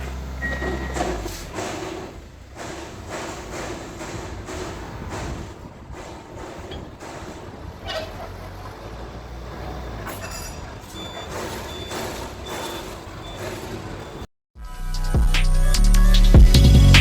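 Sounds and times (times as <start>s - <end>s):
forklift engine running under load: 0.0s - 14.3s
reversing alarm beeping: 0.4s - 1.2s, 9.9s - 14.3s.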